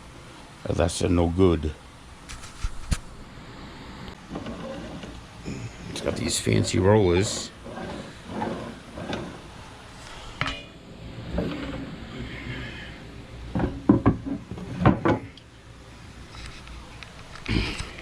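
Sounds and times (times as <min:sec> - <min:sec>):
planer being handled clattering: 0:06.0 - 0:09.4.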